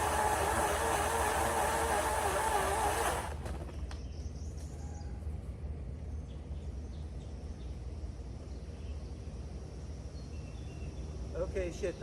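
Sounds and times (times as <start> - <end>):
faint bird chirps: 3.8 - 11.5.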